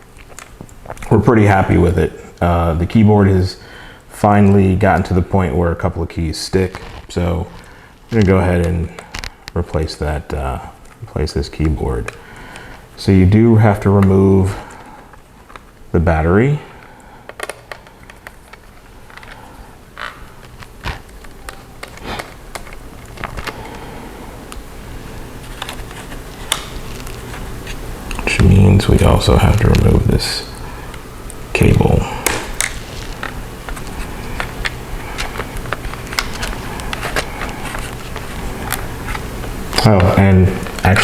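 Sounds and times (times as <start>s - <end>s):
steady low hum: 0.0s - 41.0s
small parts clicking and tapping: 17.3s - 23.7s, 25.4s - 27.2s.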